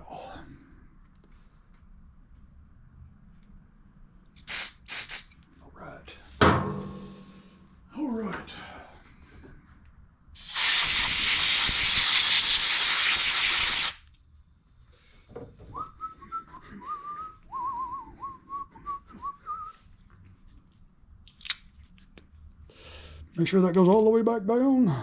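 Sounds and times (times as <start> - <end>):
loud steady hiss: 4.4 - 5.3, 10.4 - 14.0
person whistling soft notes: 15.7 - 19.8.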